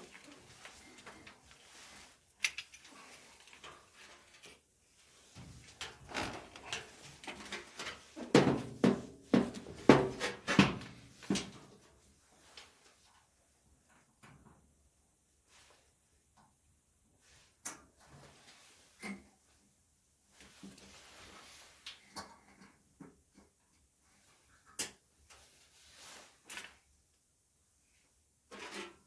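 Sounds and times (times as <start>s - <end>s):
dryer parts knocking and clattering: 5.4s - 11.8s.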